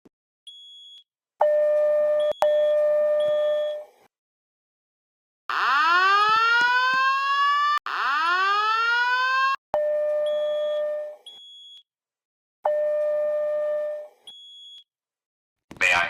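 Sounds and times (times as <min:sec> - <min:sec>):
fire alarm whoop tones: 0:05.5 - 0:09.6
steady alarm tone: 0:05.5 - 0:09.6.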